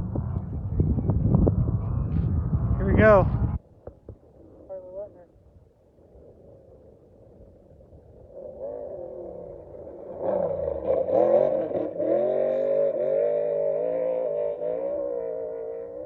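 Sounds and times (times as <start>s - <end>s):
race vehicle engine revving: 8.3s - 16.0s.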